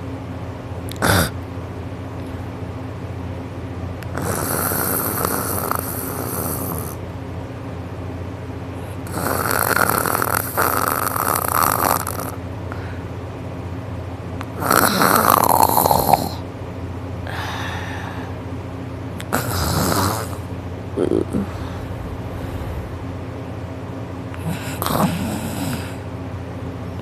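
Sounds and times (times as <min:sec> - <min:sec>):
man snoring loudly: 0:04.2 - 0:07.0, 0:09.1 - 0:12.4, 0:19.4 - 0:20.4.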